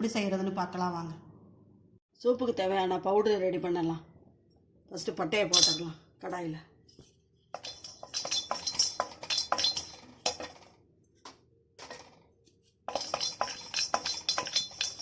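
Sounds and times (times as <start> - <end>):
metal spatula clinking on metal: 5.5 - 5.8, 7.6 - 10.6, 12.9 - 15.0
cinnamon sticks rattling in a pan: 5.6 - 5.8, 7.6 - 10.7, 11.8 - 12.2, 12.9 - 15.0.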